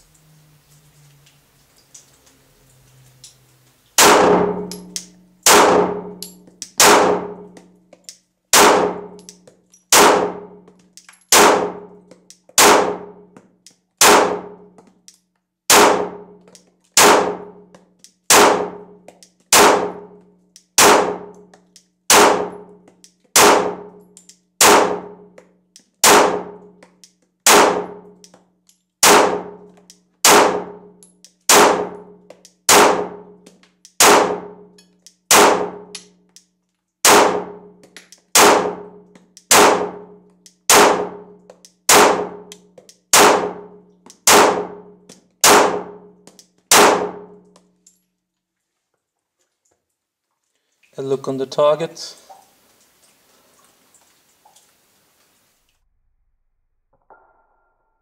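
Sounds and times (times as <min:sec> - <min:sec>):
pistol shots with ringing tail: 0:04.0 - 0:07.6, 0:08.5 - 0:09.3, 0:09.9 - 0:10.7, 0:11.3 - 0:12.0, 0:12.6 - 0:13.3, 0:14.0 - 0:14.7, 0:15.7 - 0:16.4, 0:17.0 - 0:17.7, 0:18.3 - 0:20.2, 0:20.8 - 0:21.4, 0:22.1 - 0:22.8, 0:23.4 - 0:25.3, 0:26.0 - 0:26.8, 0:27.4 - 0:28.2, 0:29.0 - 0:33.4, 0:34.0 - 0:34.7, 0:35.3 - 0:36.1, 0:37.0 - 0:47.4.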